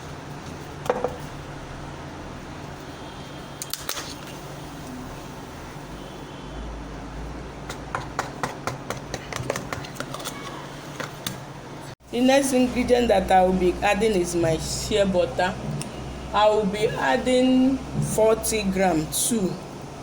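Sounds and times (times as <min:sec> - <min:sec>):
containers and utensils clicking: 0:07.7 - 0:11.4
steady low hum: 0:11.4 - 0:20.0.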